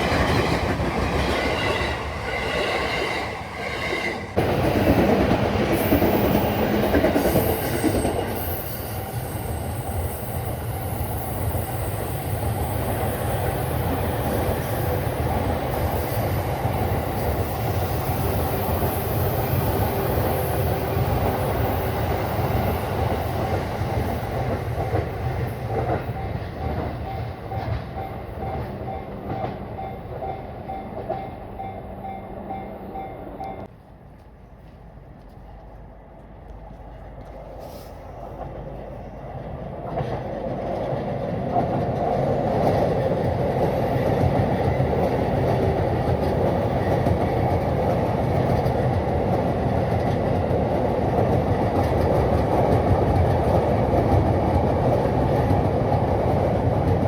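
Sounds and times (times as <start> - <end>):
train wheels clattering on rail joints: 39.8 - 57.0.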